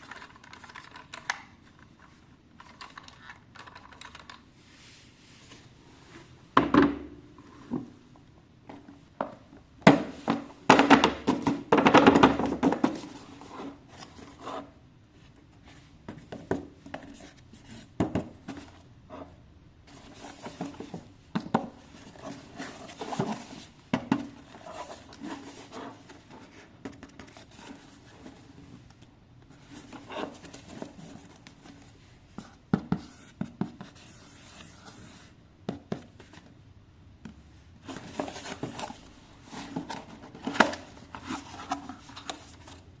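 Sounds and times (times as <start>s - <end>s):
hands handling toy and packaging: 0.0s - 4.5s, 37.8s - 43.0s.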